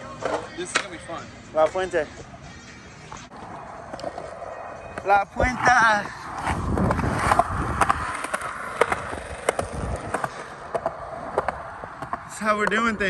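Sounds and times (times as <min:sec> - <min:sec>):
skateboard wheels rolling on concrete: 0:00.0 - 0:13.0
skateboard clacks: 0:06.0 - 0:13.0.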